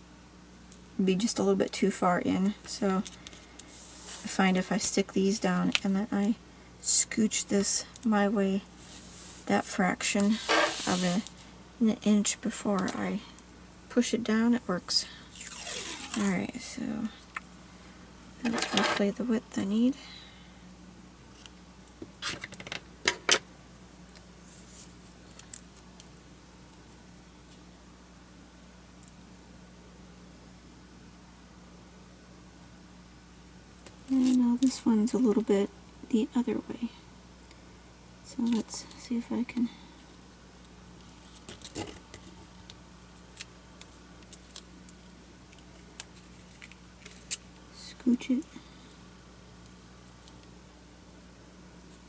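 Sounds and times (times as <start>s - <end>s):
light crinkles of tape: 24.1s - 27.6s, 33.8s - 34.8s, 40.6s - 47.8s.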